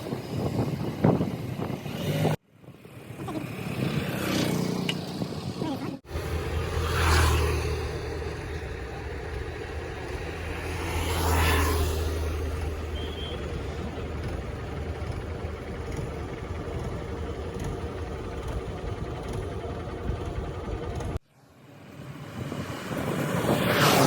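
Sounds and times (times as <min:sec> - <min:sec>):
vehicle engine and tyre rumble: 0:00.0 - 0:24.0
vehicle passing close by: 0:03.0 - 0:15.6, 0:21.6 - 0:24.0.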